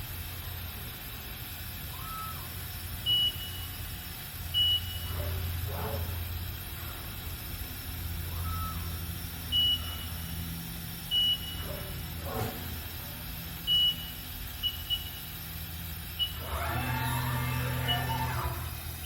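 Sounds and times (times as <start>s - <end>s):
low machine hum: 0.0s - 19.0s
high-pitched electronic beeps: 16.2s - 18.8s.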